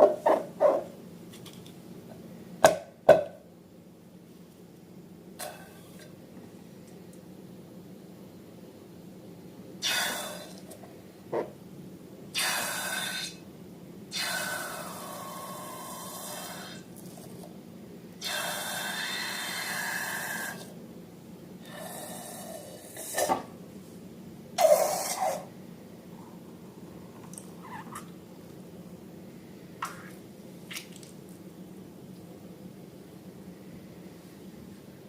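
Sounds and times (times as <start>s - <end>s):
air hissing out of balloons: 9.8s - 10.6s, 12.4s - 13.4s, 24.6s - 25.5s.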